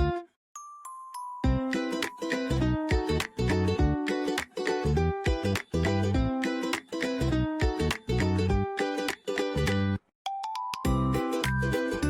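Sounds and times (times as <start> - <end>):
strummed plucked strings music: 1.5 - 10.0, 10.9 - 12.0.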